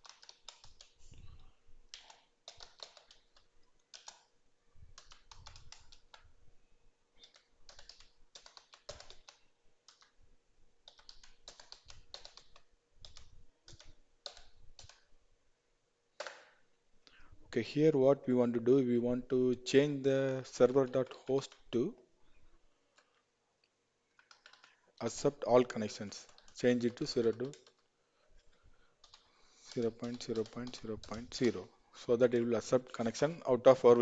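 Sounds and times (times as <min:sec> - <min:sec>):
typing on computer keyboard: 0:00.0 - 0:01.0, 0:01.9 - 0:04.3, 0:04.9 - 0:06.3, 0:07.2 - 0:10.2, 0:10.8 - 0:15.1, 0:24.1 - 0:24.8, 0:25.9 - 0:27.9, 0:29.0 - 0:31.6.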